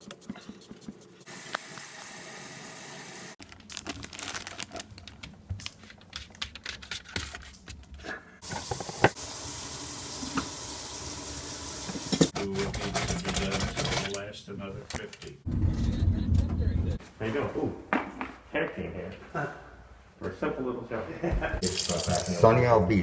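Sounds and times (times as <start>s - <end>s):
tap water running into sink: 1.3s - 3.4s, 8.4s - 12.3s, 21.6s - 22.4s.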